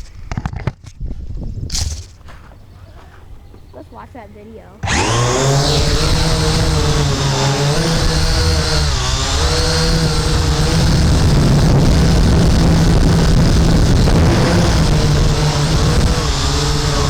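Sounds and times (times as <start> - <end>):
wind noise: 0.0 - 3.5, 4.8 - 17.0
quadcopter motors and propellers: 4.8 - 17.0.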